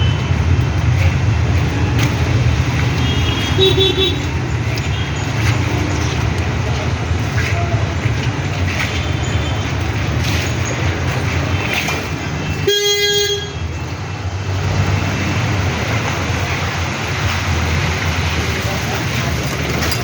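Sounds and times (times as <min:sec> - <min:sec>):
road traffic rumble: 0:00.0 - 0:20.0
vehicle horn toot: 0:02.9 - 0:04.3, 0:12.6 - 0:13.6.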